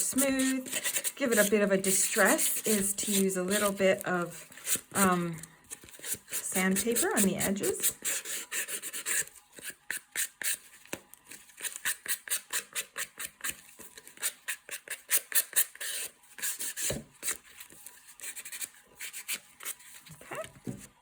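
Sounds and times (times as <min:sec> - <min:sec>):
sandpaper rasping on card edges: 0:00.1 - 0:03.8, 0:05.9 - 0:10.6, 0:11.6 - 0:17.4.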